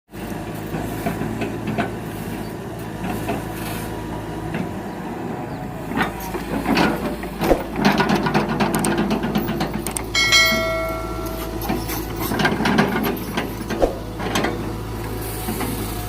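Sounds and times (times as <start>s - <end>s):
excavator diesel engine running: 0.1s - 16.0s
knocks and clatter of logs: 6.0s - 14.8s.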